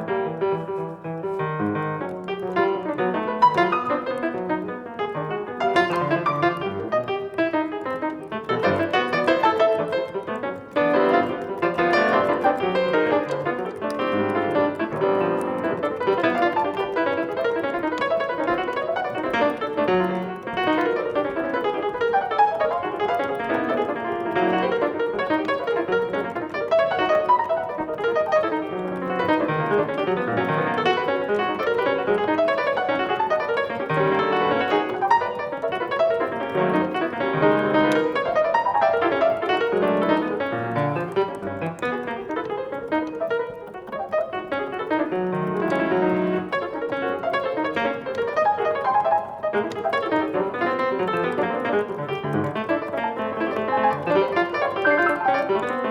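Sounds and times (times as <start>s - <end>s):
solo piano playing: 0.0s - 55.9s.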